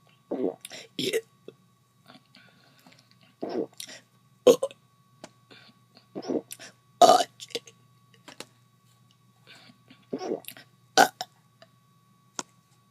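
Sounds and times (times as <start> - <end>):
person making throaty sounds: 0.3 - 1.2, 6.2 - 7.7, 10.1 - 11.3.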